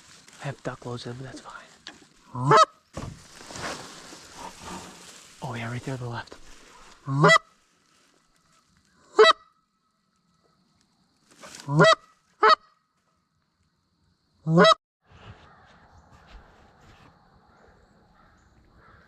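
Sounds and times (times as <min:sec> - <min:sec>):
geese honking: 0:02.3 - 0:02.7, 0:06.8 - 0:07.5, 0:11.7 - 0:12.6.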